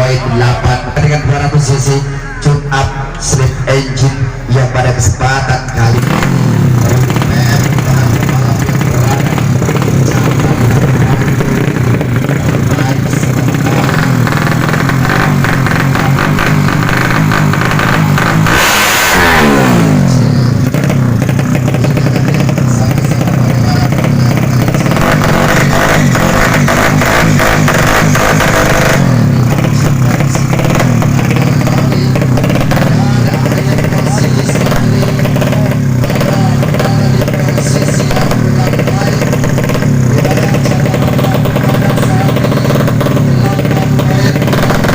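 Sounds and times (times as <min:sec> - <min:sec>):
indistinct voice: 0:00.0 - 0:20.8, 0:21.5 - 0:44.9
motorcycle engines at high revs: 0:00.0 - 0:44.9
motorcycle passing by: 0:05.8 - 0:44.9.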